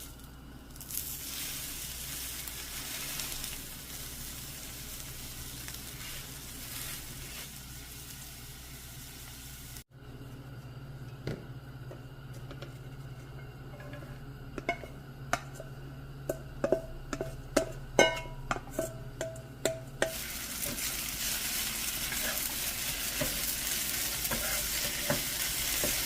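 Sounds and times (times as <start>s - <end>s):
food sizzling in a pan: 0.0s - 9.9s, 20.0s - 26.0s
quiet kitchen sounds: 0.0s - 26.0s.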